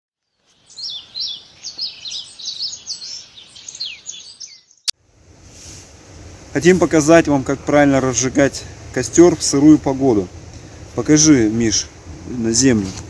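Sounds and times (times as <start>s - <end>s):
songbird chirping: 0.2s - 5.0s
faint steady hiss: 4.9s - 13.0s.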